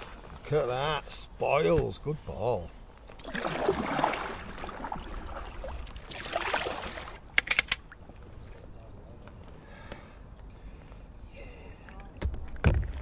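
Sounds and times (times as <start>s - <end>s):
paddle splashing through water: 3.2s - 7.2s.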